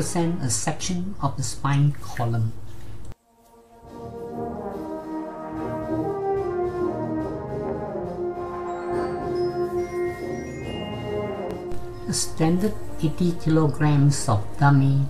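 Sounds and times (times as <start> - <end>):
held brass notes: 3.2 - 14.8
soft orchestral music: 3.2 - 15.0.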